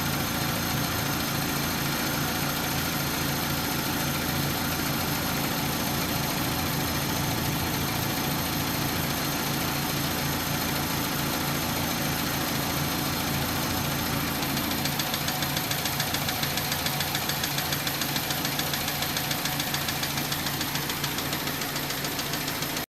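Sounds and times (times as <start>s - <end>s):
car engine idling: 0.0s - 22.9s
fast regular ticking: 14.4s - 22.9s.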